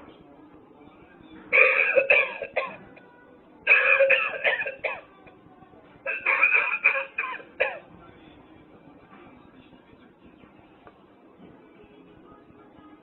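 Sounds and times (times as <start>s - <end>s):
recorded coughing from novelty ashtray: 1.6s - 2.9s, 3.7s - 5.0s, 6.1s - 7.9s.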